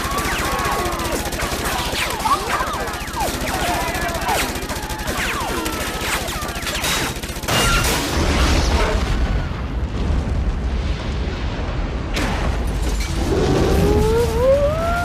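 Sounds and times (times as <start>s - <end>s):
wailing gliding tones: 0.0s - 7.2s, 13.3s - 15.0s
big explosion with low rumble: 8.0s - 14.4s.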